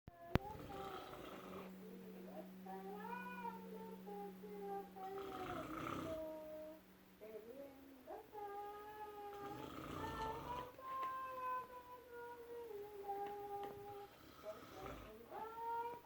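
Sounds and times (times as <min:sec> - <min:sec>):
woman singing held notes: 0:00.1 - 0:16.0
man snoring: 0:00.4 - 0:01.8, 0:05.0 - 0:06.3, 0:09.3 - 0:10.7, 0:14.1 - 0:15.2.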